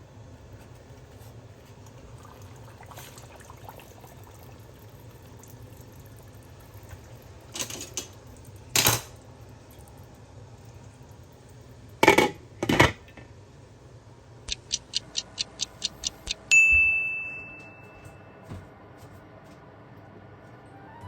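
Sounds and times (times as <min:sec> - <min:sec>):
water and handling noises: 0:00.5 - 0:05.7
steady low hum: 0:04.0 - 0:20.8.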